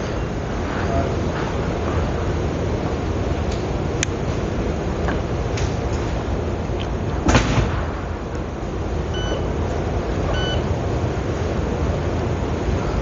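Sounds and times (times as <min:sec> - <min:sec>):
low background noise: 0:00.0 - 0:13.0
short electronic beeps: 0:09.1 - 0:09.5, 0:10.3 - 0:10.7.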